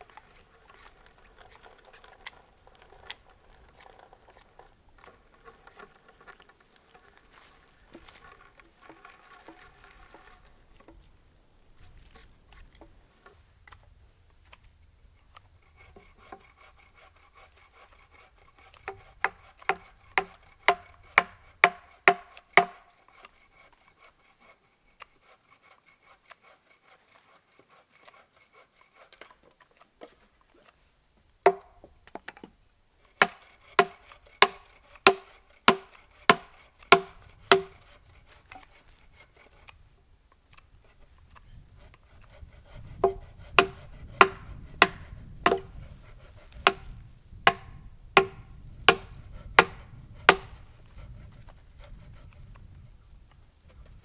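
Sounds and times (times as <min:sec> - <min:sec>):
hand tool striking wood: 0:18.8 - 0:23.4, 0:31.4 - 0:39.0, 0:41.8 - 0:50.7.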